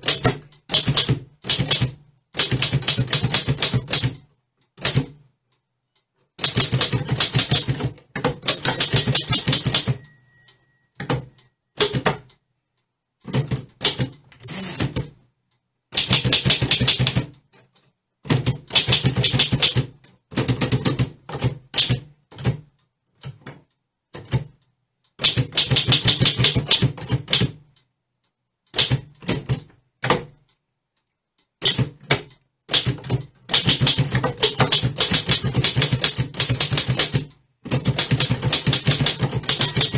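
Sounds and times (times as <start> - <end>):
typewriter key strikes: 6.4 - 10.1, 32.7 - 39.9
typewriter bell ring: 8.6 - 11.9, 14.4 - 14.9, 39.6 - 39.9.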